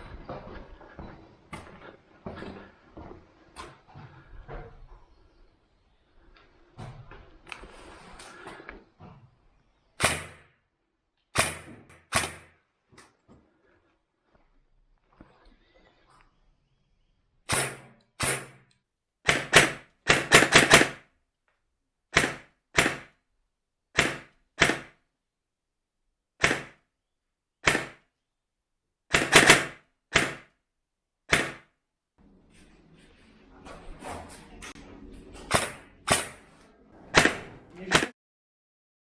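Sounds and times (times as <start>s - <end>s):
airsoft guns firing: 10.0s - 10.5s, 11.3s - 12.5s, 17.5s - 21.1s, 22.1s - 23.1s, 24.0s - 25.0s, 26.4s - 26.8s, 27.6s - 28.0s, 29.1s - 30.5s, 35.5s - 36.4s, 37.1s - 38.1s.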